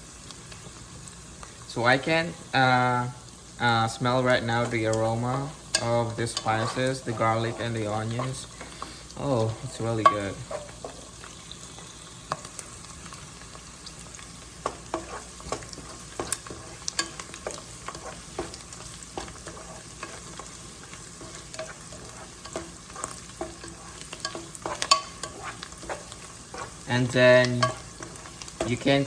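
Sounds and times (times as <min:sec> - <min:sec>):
onions sizzling in oil: 0:00.0 - 0:29.0
utensil scraping a pan: 0:04.0 - 0:12.4, 0:14.6 - 0:29.0.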